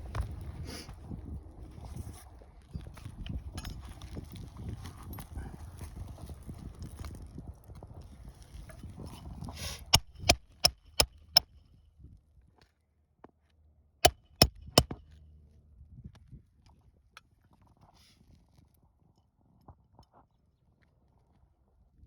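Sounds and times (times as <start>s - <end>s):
hammer driving nails into shingles: 10.0s - 11.5s, 14.0s - 15.0s.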